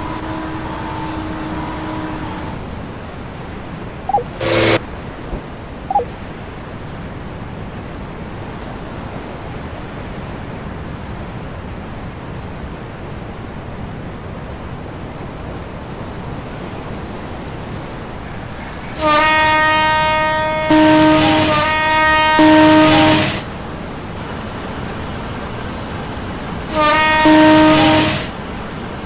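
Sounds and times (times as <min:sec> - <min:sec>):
boat horn blast: 0:00.0 - 0:04.8, 0:18.9 - 0:23.6, 0:26.6 - 0:28.4.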